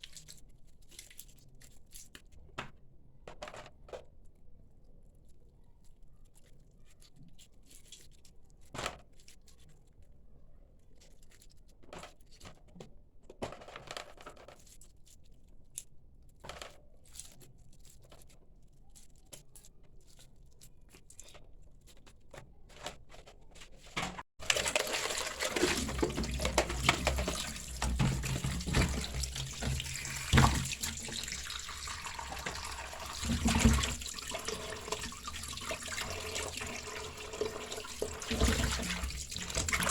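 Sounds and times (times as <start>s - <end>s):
kitchen clicks and knocks: 24.0s - 34.0s
knocks in water: 24.4s - 35.1s
tap running into sink: 24.4s - 39.9s.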